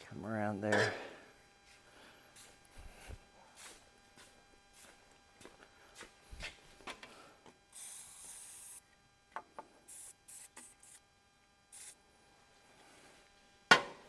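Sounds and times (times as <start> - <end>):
aerosol can spraying: 7.8 - 8.8, 9.9 - 11.0, 11.7 - 12.0.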